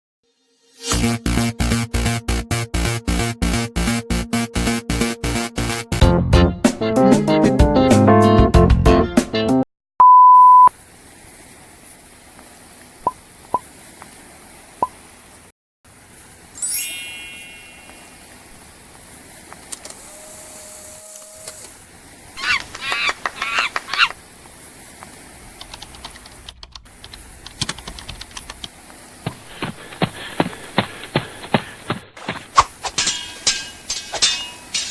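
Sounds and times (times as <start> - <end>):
high censor beep: 10.0 - 10.7
rapid pitched calls: 22.4 - 24.2
run of clicks: 22.6 - 24.2, 25.5 - 32.0
sharp ticks: 25.6 - 28.7.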